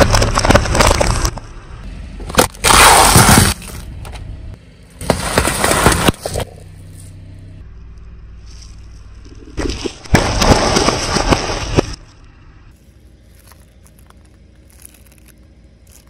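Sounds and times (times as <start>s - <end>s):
car crushing objects: 0.0s - 1.5s, 2.2s - 4.0s
car engine humming low: 0.0s - 9.6s, 11.7s - 16.0s.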